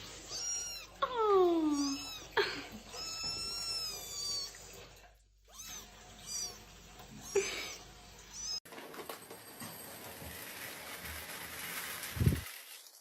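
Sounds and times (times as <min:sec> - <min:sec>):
cat meowing: 0:00.2 - 0:04.6.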